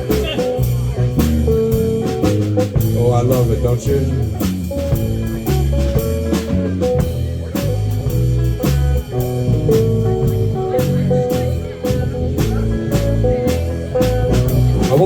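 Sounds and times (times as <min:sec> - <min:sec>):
bass line: 0:00.0 - 0:15.0
drum kit beat: 0:00.0 - 0:15.0
guitar: 0:00.0 - 0:15.0.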